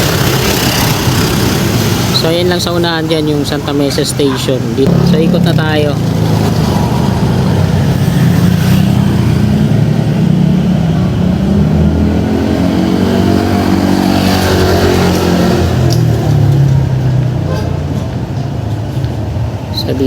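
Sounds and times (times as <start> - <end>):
vehicle engine revving: 4.6 - 18.4.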